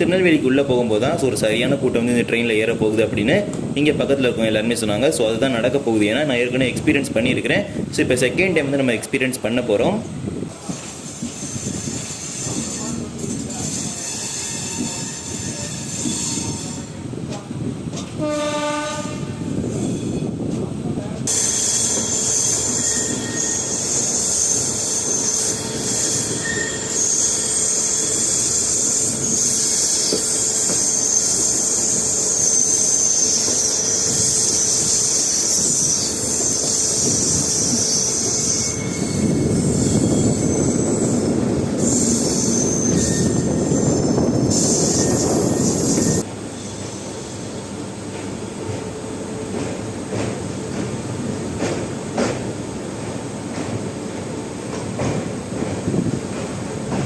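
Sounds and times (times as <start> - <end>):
train rumbling on rails: 0.0 - 57.0
high steady squeal and hiss: 10.6 - 16.9, 21.3 - 47.7
train horn: 18.2 - 19.5.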